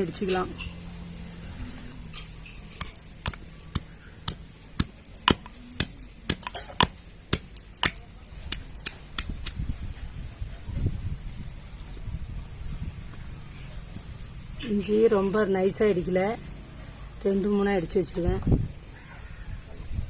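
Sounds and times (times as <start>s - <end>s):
pestle pounding in a mortar: 2.7s - 9.3s.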